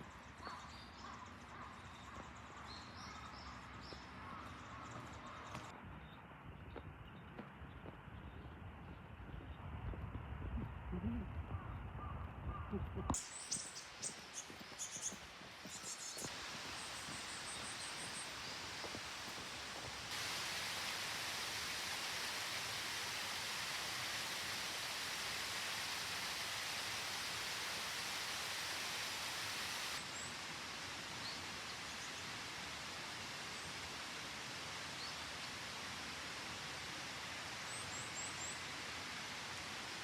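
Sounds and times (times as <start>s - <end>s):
stream and waterfall rushing: 13.1s - 40.0s.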